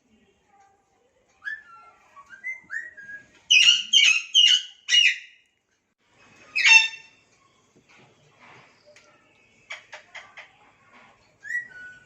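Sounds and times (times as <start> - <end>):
lovebirds twittering chirps: 1.5 - 5.4
shrill bird calls: 2.8 - 5.4, 6.6 - 7.2.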